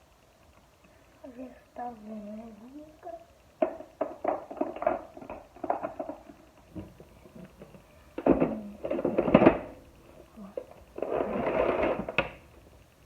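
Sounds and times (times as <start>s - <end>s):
parts clattering: 3.6s - 12.8s
plastic parts knocking and scraping: 3.6s - 12.8s.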